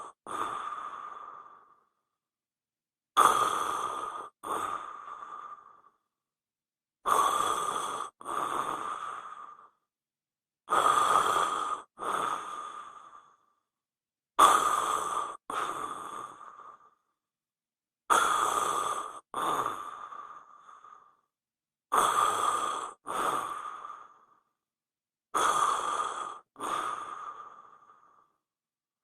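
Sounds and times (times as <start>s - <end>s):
person snoring heavily: 0.0s - 1.8s, 3.2s - 5.9s, 7.0s - 9.8s, 10.7s - 13.4s, 14.4s - 16.9s, 18.1s - 21.0s, 21.9s - 24.2s, 25.4s - 28.2s.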